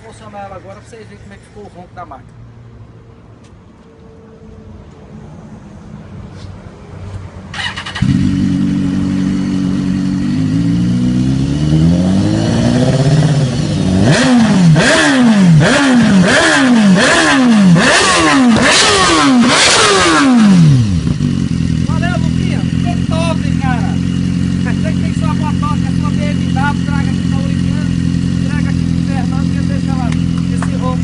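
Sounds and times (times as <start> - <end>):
motorcycle engine idling and revving: 7.0 - 31.0.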